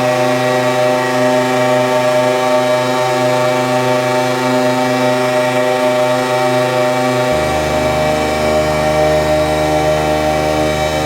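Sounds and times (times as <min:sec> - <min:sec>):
buzzy electronic drone: 0:07.0 - 0:11.0.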